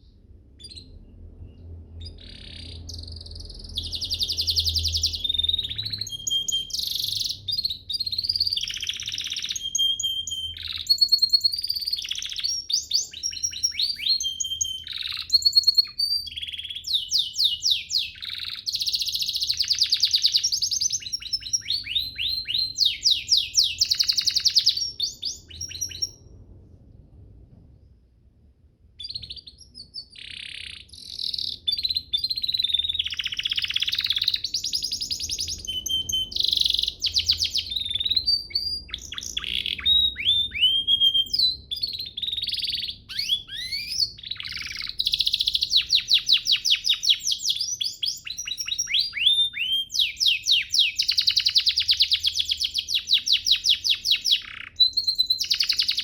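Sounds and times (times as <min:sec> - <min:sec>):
canary singing trills: 0:00.0 - 0:26.4, 0:29.0 - 0:56.0.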